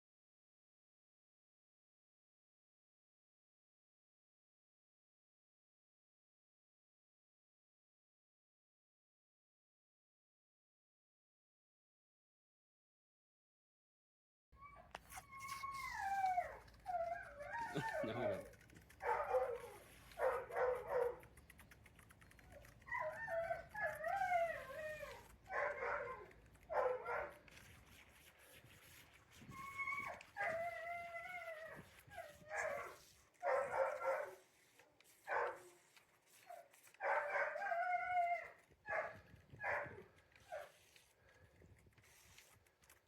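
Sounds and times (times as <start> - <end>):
dog whining and howling: 14.6 - 21.2, 22.2 - 27.4, 29.5 - 34.4, 36.5 - 40.7.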